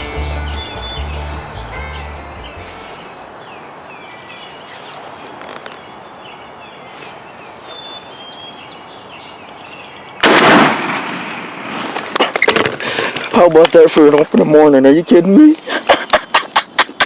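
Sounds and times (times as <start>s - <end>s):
songbirds chirping: 0.0s - 10.4s, 11.3s - 17.0s
shotgun blast: 10.2s - 11.8s.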